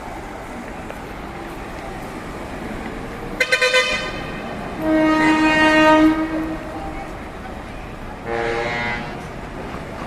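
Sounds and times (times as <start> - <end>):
truck air horn blasts: 3.4 - 6.7, 8.2 - 9.2.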